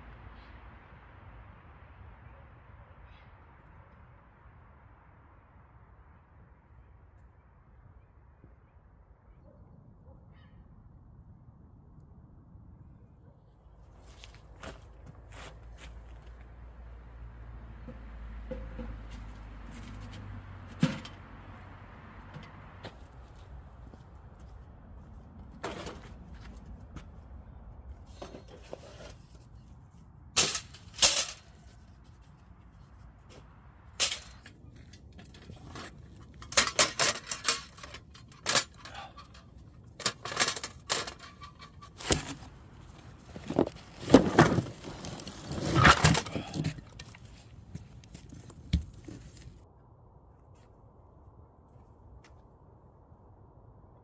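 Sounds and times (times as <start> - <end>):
clatter and rustling: 28.0 - 29.8, 30.4 - 33.4, 34.0 - 49.6.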